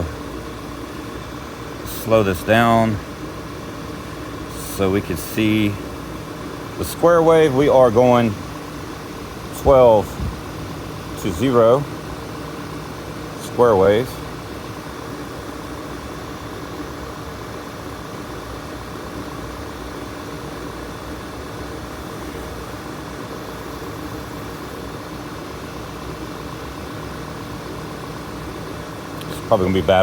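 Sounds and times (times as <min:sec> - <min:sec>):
air conditioning running: 0:00.0 - 0:30.0.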